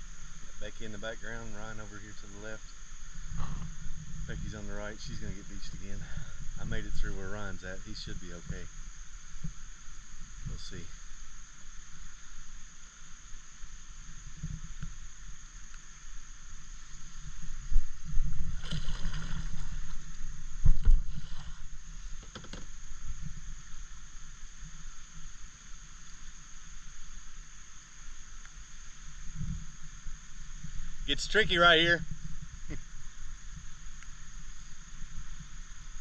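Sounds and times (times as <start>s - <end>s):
paddle strokes in water: 16.8s - 25.3s
splashes and knocks: 18.4s - 21.5s.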